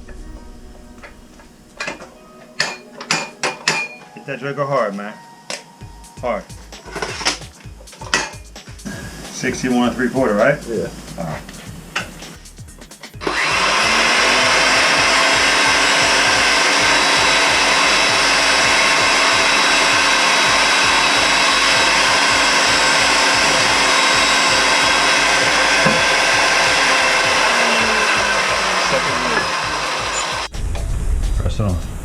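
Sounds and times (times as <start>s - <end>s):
electric power tool motor: 13.2s - 30.5s.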